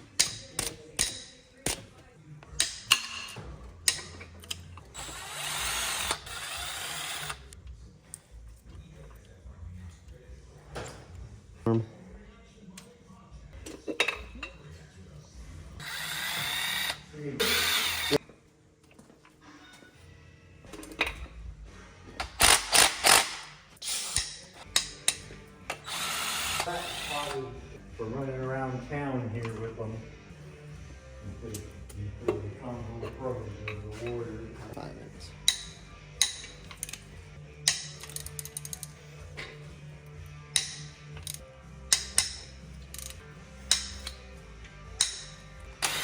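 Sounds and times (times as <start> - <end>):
hand tools clanking on metal: 2.6 - 4.9, 32.3 - 39.8, 40.5 - 46.0
power tool running: 15.8 - 18.2
metallic clinks of tools: 35.4 - 39.6.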